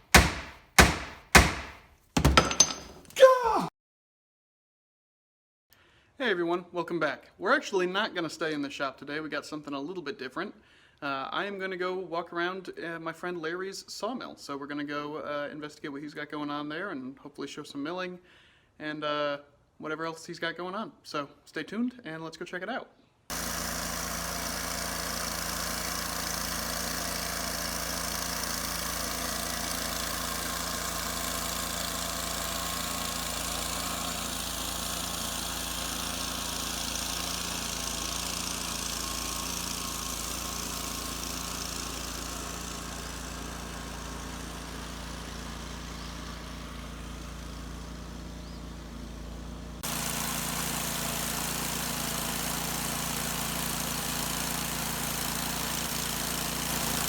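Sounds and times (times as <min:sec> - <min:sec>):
engine running steadily: 0:38.2 - 0:50.6.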